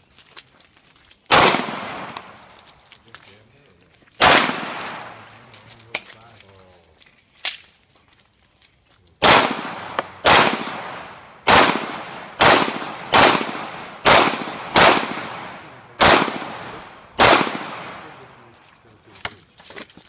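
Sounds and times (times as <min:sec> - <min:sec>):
gunshots with echo: 0:01.3 - 0:02.4, 0:04.2 - 0:05.3, 0:09.2 - 0:18.4.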